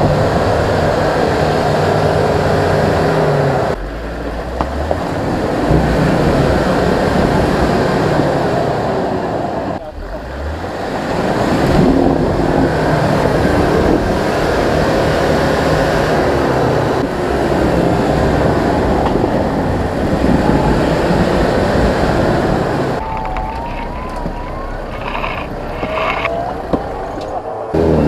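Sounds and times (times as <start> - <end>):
off-road vehicle engine under load: 0.0 - 28.0
steady noisy rush: 0.0 - 28.0
wavering whine: 16.7 - 28.0.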